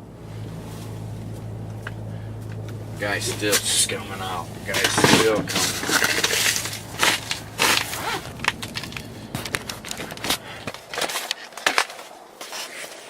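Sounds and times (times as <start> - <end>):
low steady hum: 0.0 - 12.4
frozen snow crunching: 0.3 - 13.0.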